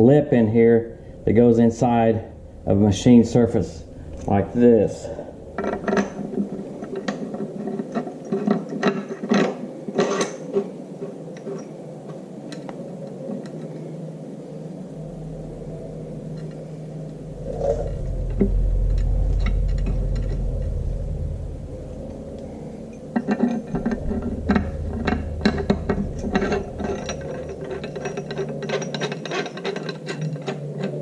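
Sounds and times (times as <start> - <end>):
deep steady rumble: 0.0 - 8.4, 13.7 - 31.0
metal clicks and knocks: 22.9 - 31.0.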